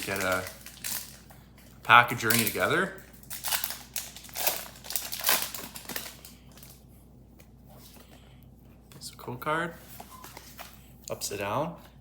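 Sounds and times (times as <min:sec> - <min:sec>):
foil wrapper tearing and crinkling: 0:00.0 - 0:01.2, 0:02.1 - 0:06.7.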